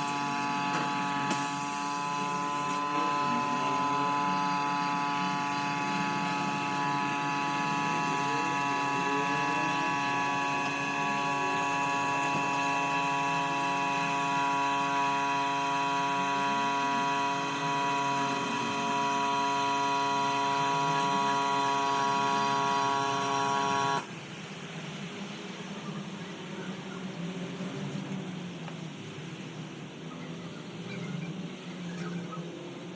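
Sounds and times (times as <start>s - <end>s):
machine motor humming: 0.0s - 24.1s.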